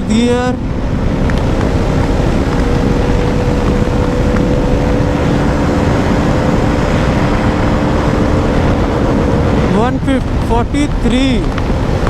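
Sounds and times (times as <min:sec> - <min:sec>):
motorcycle engine at high speed: 0:00.0 - 0:12.0
wind rush on microphone: 0:00.0 - 0:12.0.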